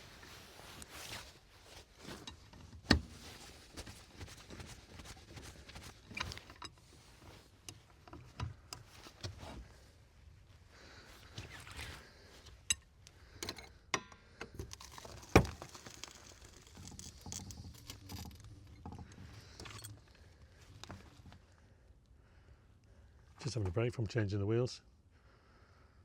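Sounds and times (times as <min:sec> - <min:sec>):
hand tools and wheel bolts clinking: 0:12.5 - 0:20.1.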